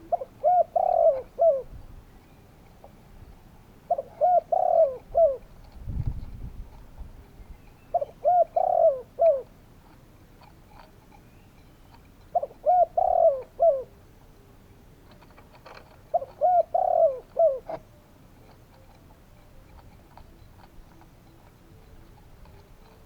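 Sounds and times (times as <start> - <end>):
dove cooing: 0.0 - 1.8, 3.8 - 5.8, 7.8 - 10.8, 11.8 - 14.4, 15.1 - 23.0.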